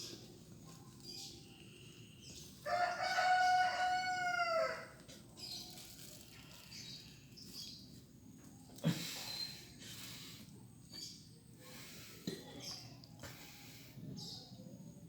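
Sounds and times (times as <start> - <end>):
rooster crowing: 2.6 - 5.0.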